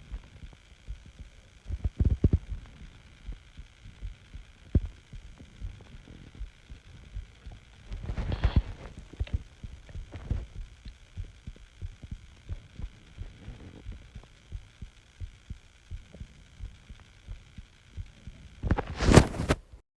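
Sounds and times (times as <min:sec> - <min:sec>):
heartbeat thumps: 0:00.0 - 0:19.6
person breathing: 0:07.9 - 0:09.4.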